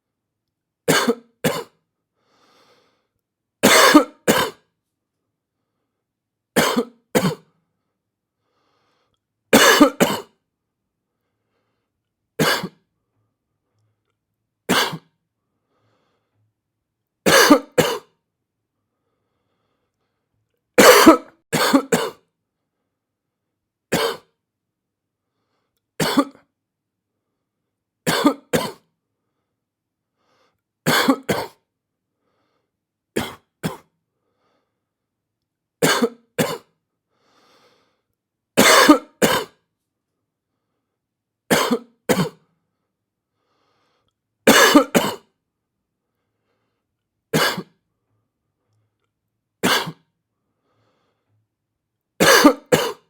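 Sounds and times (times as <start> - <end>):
person coughing: 0.9 - 1.8, 3.6 - 4.7, 6.6 - 7.5, 9.6 - 10.4, 12.4 - 12.8, 14.7 - 15.1, 17.3 - 18.2, 20.8 - 22.2, 23.9 - 24.3, 26.0 - 26.4, 28.1 - 28.8, 30.9 - 31.6, 33.2 - 33.9, 35.8 - 36.7, 38.6 - 39.6, 41.5 - 42.4, 44.5 - 45.3, 47.4 - 47.8, 49.6 - 50.1, 52.2 - 53.0.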